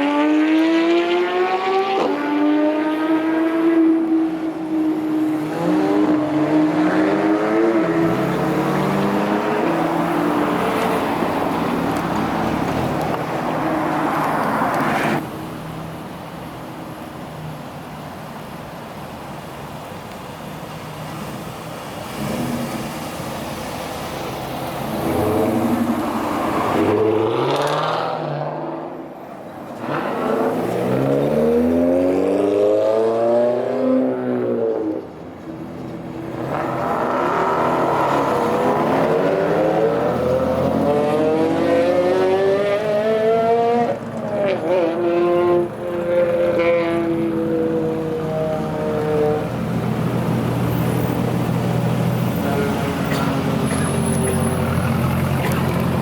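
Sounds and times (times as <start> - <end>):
car engine revving: 0.0 - 15.2, 21.2 - 29.0, 36.3 - 50.6.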